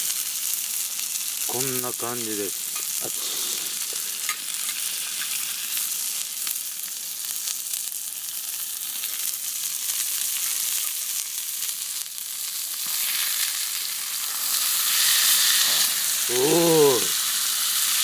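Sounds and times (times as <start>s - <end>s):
meat sizzling in fat: 0.0s - 18.0s
fat crackling and spitting: 2.9s - 4.5s, 15.2s - 17.2s.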